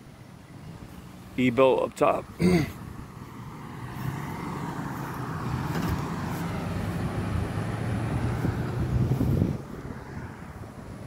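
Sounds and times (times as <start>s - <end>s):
vehicle passing by: 2.8s - 11.0s.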